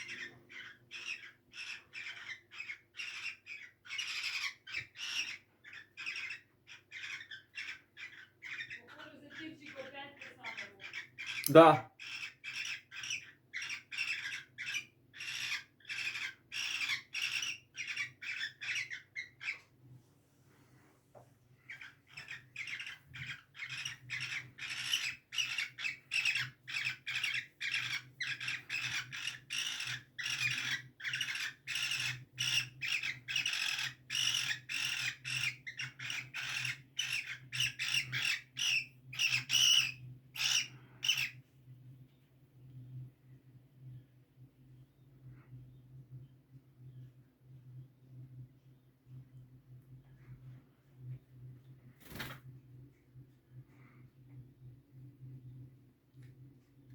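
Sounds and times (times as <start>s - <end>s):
cockatiels squawking: 0.0s - 19.6s, 21.7s - 41.3s.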